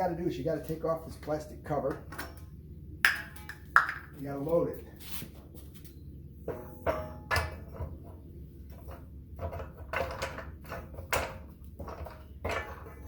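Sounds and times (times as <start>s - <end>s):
steel pipe knocking and clanking: 1.9s - 4.2s, 6.4s - 13.0s.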